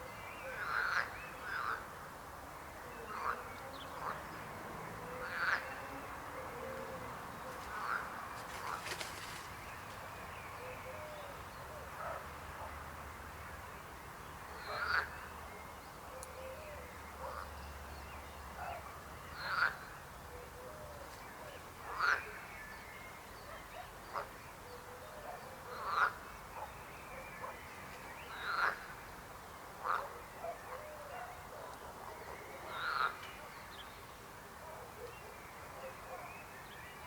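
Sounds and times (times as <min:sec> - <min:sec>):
frog chorus: 0:00.4 - 0:01.9, 0:02.9 - 0:06.7, 0:14.6 - 0:15.3, 0:19.4 - 0:20.0, 0:21.8 - 0:22.5, 0:23.8 - 0:24.4, 0:25.2 - 0:29.1, 0:29.8 - 0:33.5
frogs croaking: 0:00.4 - 0:01.9, 0:04.9 - 0:06.3, 0:14.6 - 0:15.2, 0:19.4 - 0:19.9, 0:21.8 - 0:22.4, 0:25.6 - 0:26.7, 0:28.2 - 0:29.2, 0:29.8 - 0:30.1, 0:32.4 - 0:33.2.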